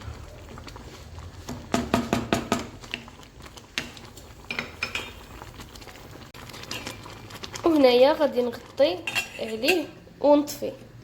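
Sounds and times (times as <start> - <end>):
mixture boiling: 0.0 - 11.0
utensil clinking against pot: 4.5 - 5.2, 9.0 - 10.0.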